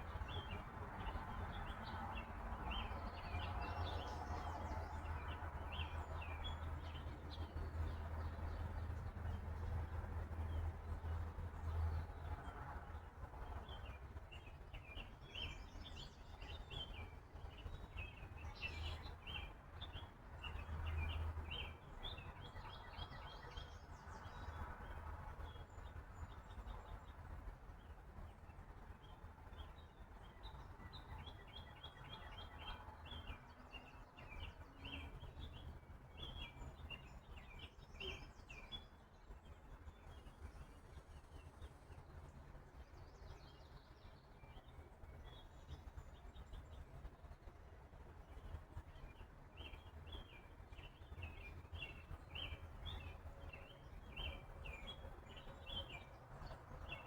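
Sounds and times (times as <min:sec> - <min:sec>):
bird chirping: 0:49.1 - 0:57.0.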